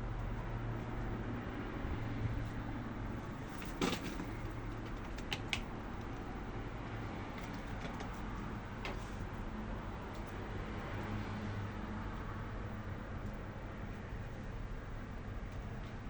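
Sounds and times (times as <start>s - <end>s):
low background rumble: 0.0s - 10.9s
pigeons tapping and clicking: 3.4s - 6.2s, 7.4s - 8.2s.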